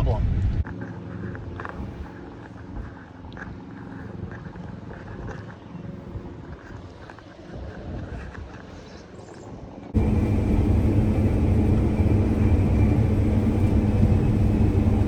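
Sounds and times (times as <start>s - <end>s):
combine harvester engine drone: 10.0s - 15.0s.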